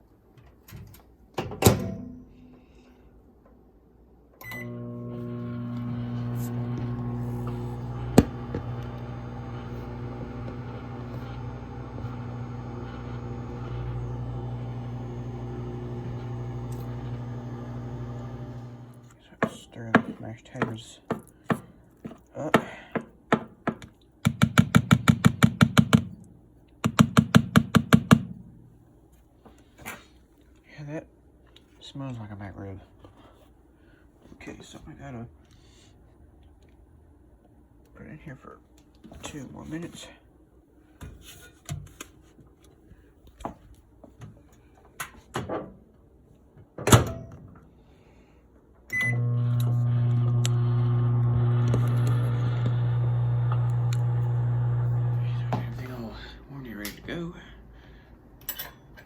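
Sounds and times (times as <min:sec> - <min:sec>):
microwave oven humming: 0:04.4 - 0:19.1, 0:48.9 - 0:56.2.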